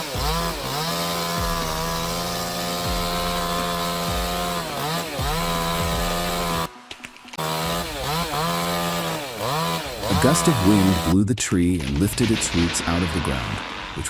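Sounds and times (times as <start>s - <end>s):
chainsaw at full throttle: 0.0s - 6.7s, 7.4s - 11.2s.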